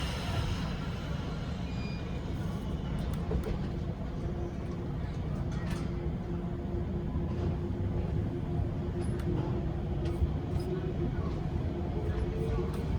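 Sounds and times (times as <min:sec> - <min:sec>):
train running rumble: 0:00.0 - 0:12.9.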